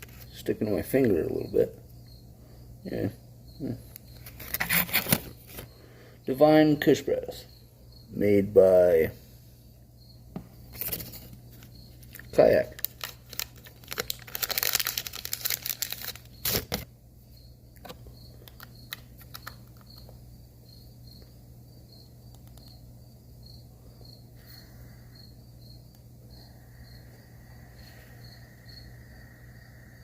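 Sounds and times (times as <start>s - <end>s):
steady low hum: 0.0s - 14.4s, 15.2s - 30.0s
faint cricket chirps: 0.0s - 30.0s
crinkling rustling handling noise: 10.7s - 16.8s.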